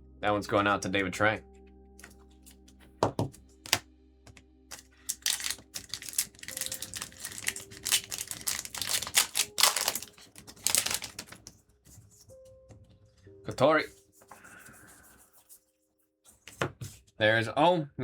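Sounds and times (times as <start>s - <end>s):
cards clicking together: 3.1s - 11.6s
foil pack crinkling: 4.7s - 11.6s.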